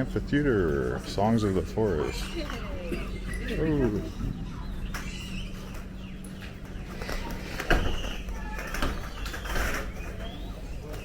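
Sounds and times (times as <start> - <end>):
birds calling and chirping: 0.0 - 11.0
steady low hum: 0.0 - 11.0.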